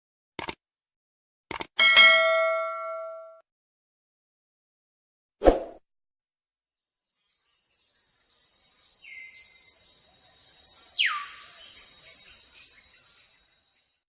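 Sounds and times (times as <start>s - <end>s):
insects droning: 6.7s - 14.0s
falling whistled bird calls: 8.0s - 14.0s.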